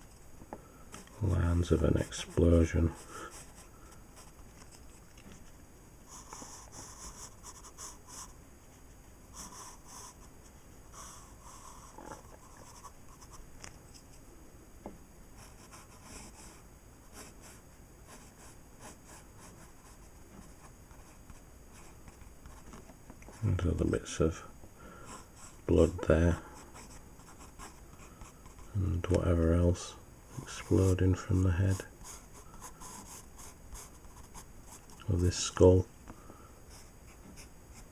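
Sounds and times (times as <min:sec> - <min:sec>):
pencil scratching on paper: 0:01.9 - 0:04.4, 0:06.1 - 0:10.3, 0:10.9 - 0:13.4, 0:15.4 - 0:22.7, 0:25.0 - 0:28.8, 0:30.4 - 0:35.4.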